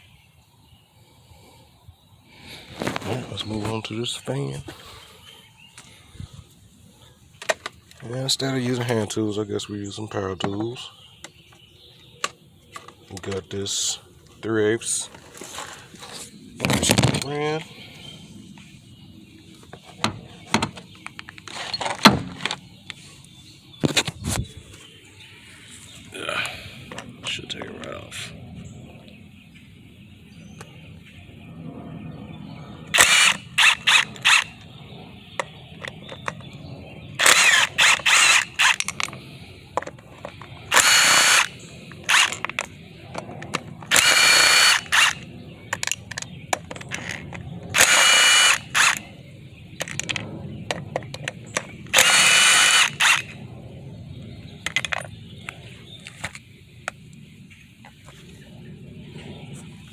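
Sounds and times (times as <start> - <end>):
cordless power tool bursts: 32.9 - 34.6, 37.2 - 39.0, 40.7 - 42.4, 43.9 - 45.2, 46.9 - 49.1, 51.9 - 53.4.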